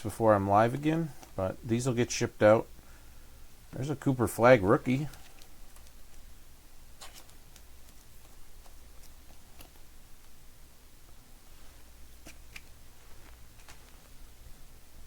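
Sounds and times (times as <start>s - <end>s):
low electrical hum: 0.0s - 15.0s
trading cards sliding and clicking: 7.0s - 9.8s.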